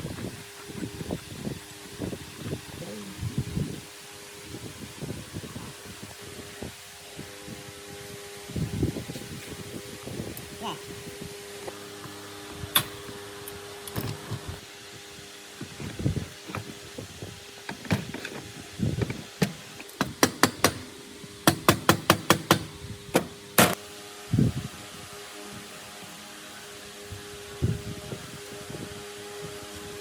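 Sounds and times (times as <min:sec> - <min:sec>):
steady hum: 0:00.0 - 0:30.0
hammer striking machine parts: 0:19.4 - 0:23.8.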